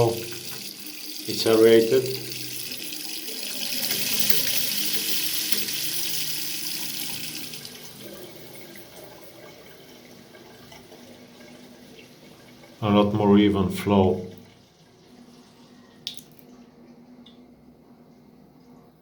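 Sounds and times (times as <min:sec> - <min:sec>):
tap water running into sink: 0:00.0 - 0:13.2.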